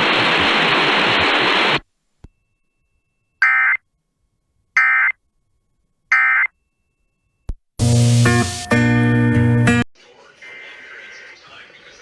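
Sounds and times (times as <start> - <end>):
radio hiss: 0.0 - 1.8, 10.0 - 12.0.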